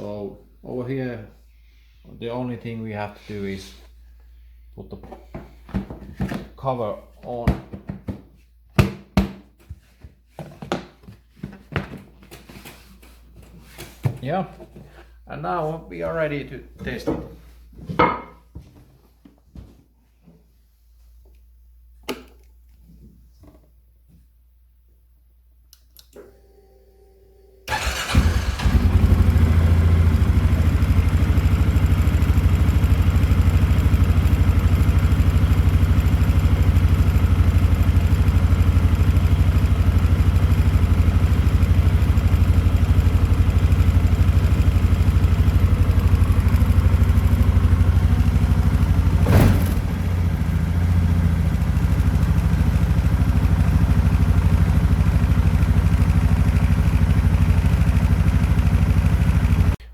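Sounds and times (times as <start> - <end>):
quad bike engine idling: 27.7 - 59.8.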